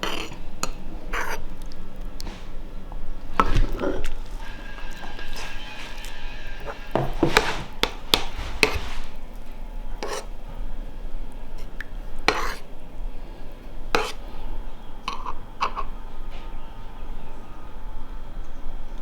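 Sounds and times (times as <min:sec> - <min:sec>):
kitchen knocks and clinks: 0:03.4 - 0:09.2.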